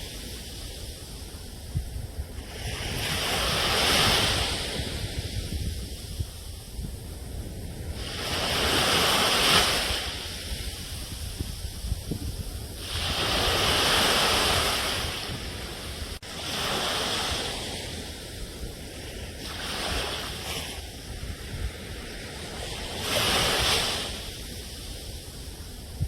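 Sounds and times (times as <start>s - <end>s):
hissing surf on shore: 0.0s - 26.0s
low rumble of sea: 0.0s - 26.0s.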